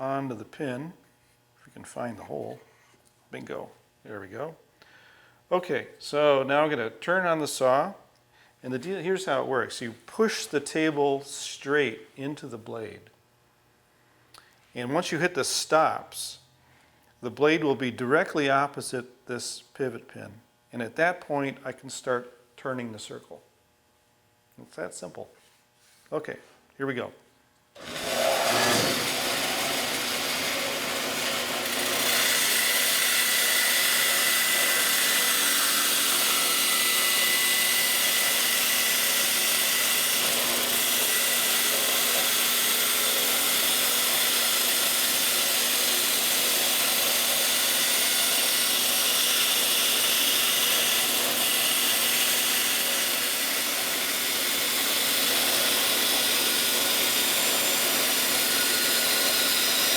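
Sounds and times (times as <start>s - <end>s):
bandsaw cutting: 27.8s - 59.9s.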